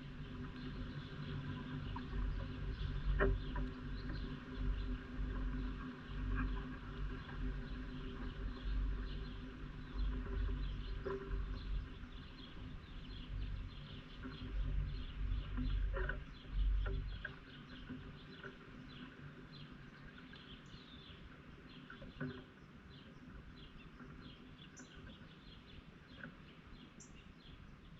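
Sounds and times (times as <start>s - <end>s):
small birds chirping: 0.0s - 27.9s.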